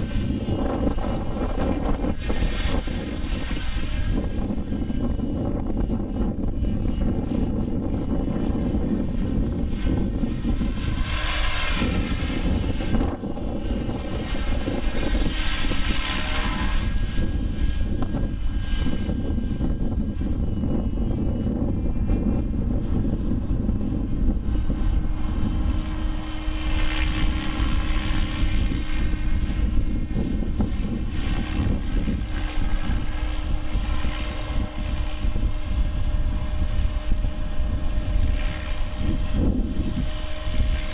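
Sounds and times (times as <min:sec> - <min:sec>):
model helicopter rotor and motor: 0:00.0 - 0:40.9
wind noise on microphone: 0:00.0 - 0:40.9.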